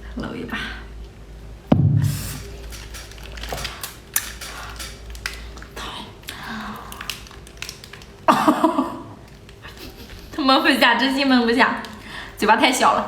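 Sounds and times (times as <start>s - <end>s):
muffled burst: 1.7s - 2.6s
chewing prawns: 2.3s - 10.4s.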